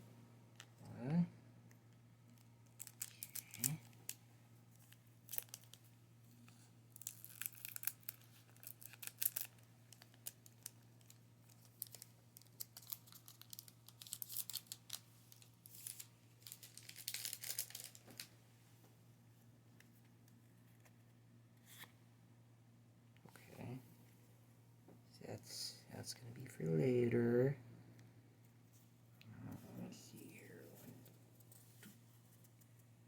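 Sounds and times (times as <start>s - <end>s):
foil wrapper tearing and crinkling: 2.8s - 4.2s, 5.2s - 5.9s, 7.0s - 18.3s.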